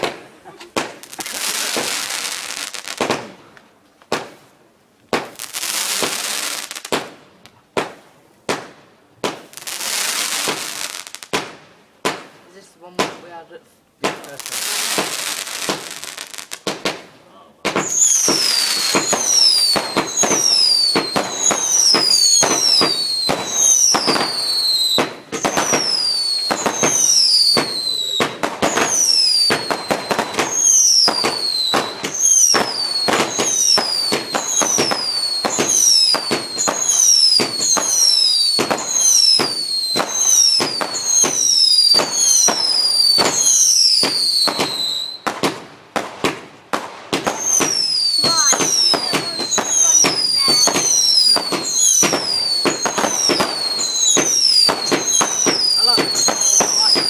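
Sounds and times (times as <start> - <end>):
firework cracks and bangs: 0.0 - 13.4, 14.0 - 57.0
falling firework whistle: 17.8 - 45.4, 47.2 - 57.0.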